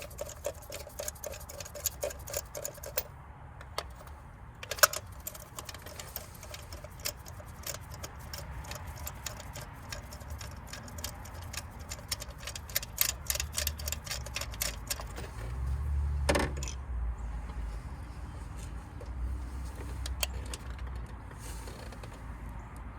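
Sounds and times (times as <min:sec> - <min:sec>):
hand ratchet clicking: 0:00.0 - 0:04.0, 0:04.6 - 0:15.6.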